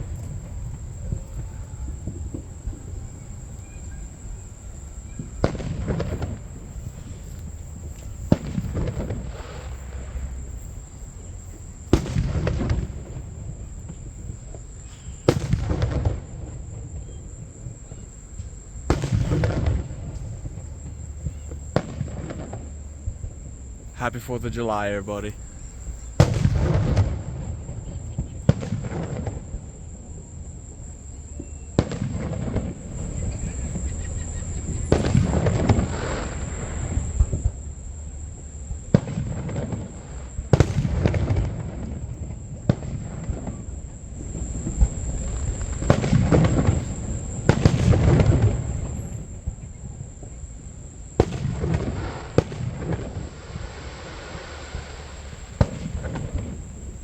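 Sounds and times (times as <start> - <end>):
fireworks bursting with crackle: 0.0 - 29.8, 31.3 - 37.6, 38.9 - 57.0.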